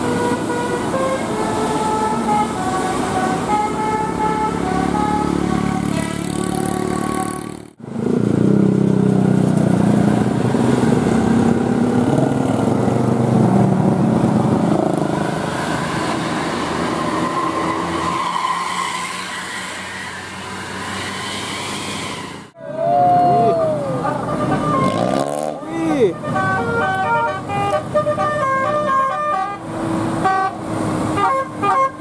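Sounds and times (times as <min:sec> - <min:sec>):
bus driving past: 0:00.0 - 0:32.0.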